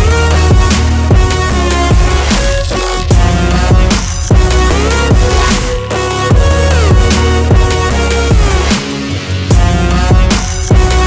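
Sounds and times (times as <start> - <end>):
electronic music with heavy bass: 0.0 - 11.0.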